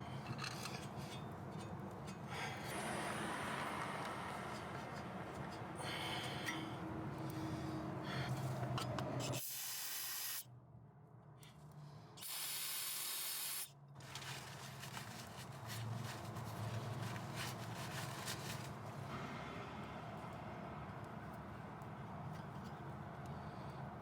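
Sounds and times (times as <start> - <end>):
aerosol spray can hissing: 9.4 - 10.4, 12.2 - 13.7.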